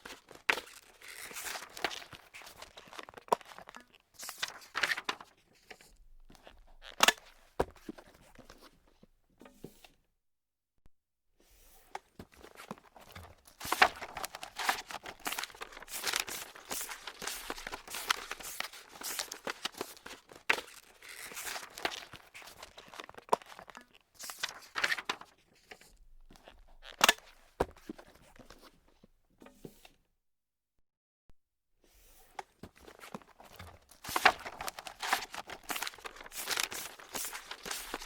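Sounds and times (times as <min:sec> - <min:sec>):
sharp paper crunch: 0:00.0 - 0:03.6, 0:12.9 - 0:23.7, 0:32.8 - 0:38.0
paper crumpling: 0:00.0 - 0:05.2, 0:12.9 - 0:25.3, 0:32.8 - 0:38.0.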